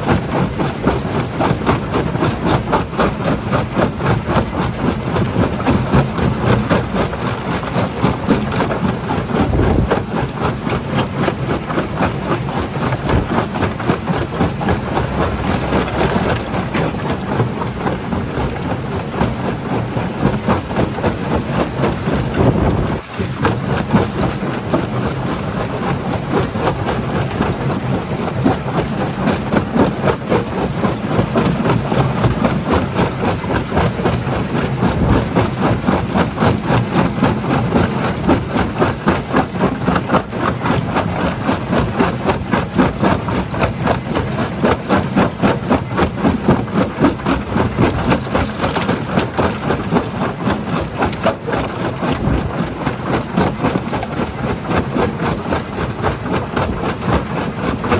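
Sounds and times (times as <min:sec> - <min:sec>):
heavy machine drone: 0:03.9 - 0:27.5.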